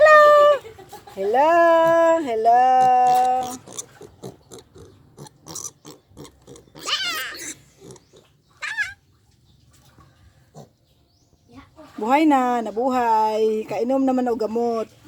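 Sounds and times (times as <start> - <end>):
piglet grunting: 1.8 - 9.0
piglet squealing: 2.9 - 9.0.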